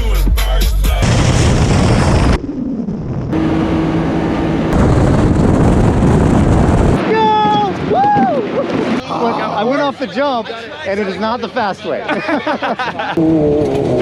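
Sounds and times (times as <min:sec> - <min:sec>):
vehicle driving: 0:01.0 - 0:09.2
wind buffeting microphone: 0:01.3 - 0:09.9.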